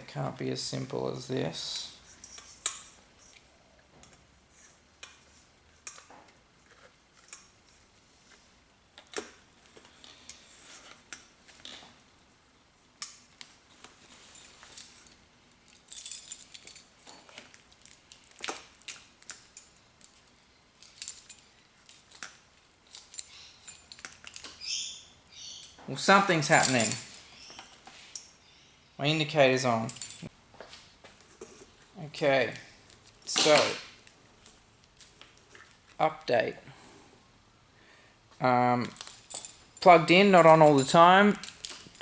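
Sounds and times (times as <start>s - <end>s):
small metallic clinks: 14.3s - 17.2s, 18.9s - 22.3s, 22.9s - 24.6s, 25.4s - 28.4s, 29.8s - 30.3s, 38.9s - 42.0s.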